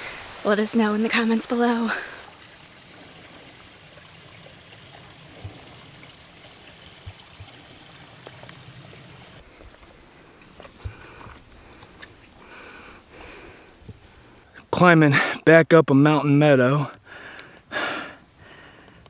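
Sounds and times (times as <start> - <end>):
high pulsing insect buzz: 0.0 - 2.3, 9.4 - 19.0
rushing outdoor background: 0.0 - 2.4.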